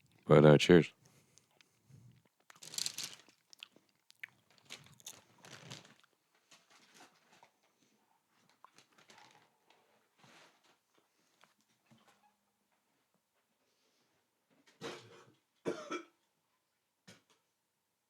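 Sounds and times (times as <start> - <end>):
crunching dry cereal: 1.4 - 6.2.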